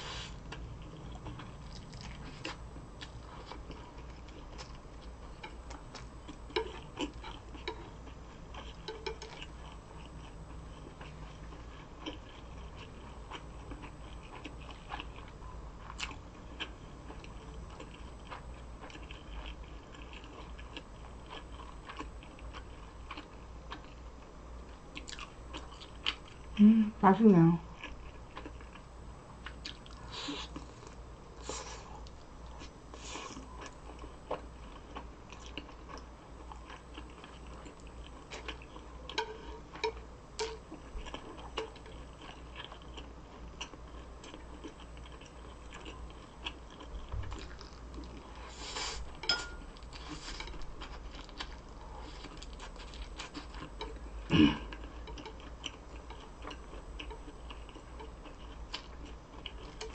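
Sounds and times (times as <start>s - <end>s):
close chewing and biting food: 0.4s - 24.0s, 31.6s - 59.9s.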